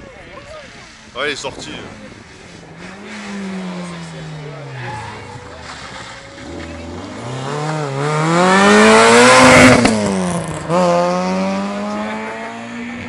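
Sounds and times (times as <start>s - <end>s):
rally car accelerating past: 2.8s - 13.0s.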